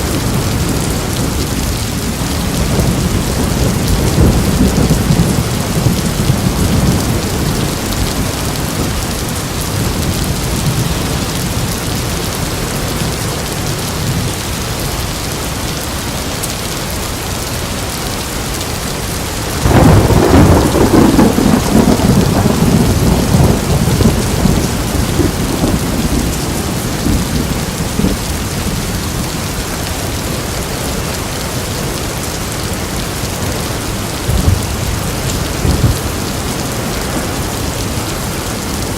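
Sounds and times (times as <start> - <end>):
low thunder rumble: 0.0 - 12.3, 19.6 - 29.6, 32.6 - 38.9
steady rain: 0.0 - 38.9
loud thunderclap: 2.1 - 11.1, 19.6 - 28.4, 34.1 - 38.0.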